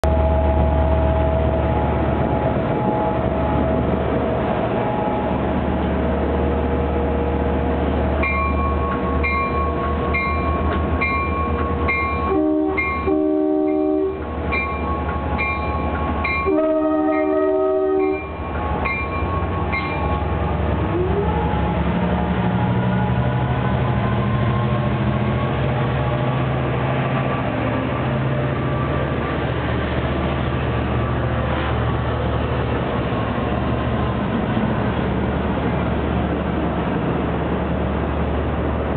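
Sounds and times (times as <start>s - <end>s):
diesel locomotive engine: 0.0s - 38.9s
locomotive bell ringing: 8.2s - 20.4s
air horn blasts: 12.3s - 14.2s, 16.5s - 18.2s.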